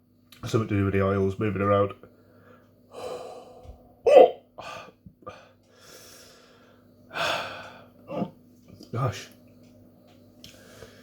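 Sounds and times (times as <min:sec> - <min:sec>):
man hiccuping: 0:04.0 - 0:04.8, 0:08.1 - 0:08.4.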